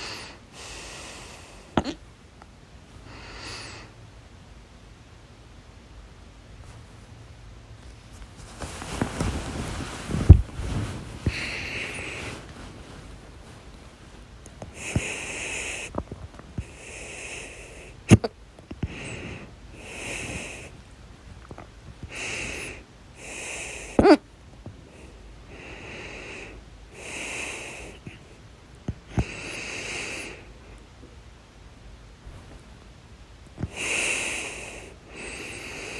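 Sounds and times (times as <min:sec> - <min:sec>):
breathing in and out: 0:00.0 - 0:02.0, 0:03.0 - 0:04.0, 0:09.0 - 0:20.9, 0:22.0 - 0:24.2, 0:24.8 - 0:30.9, 0:33.6 - 0:35.9
person hiccuping: 0:01.8 - 0:02.0.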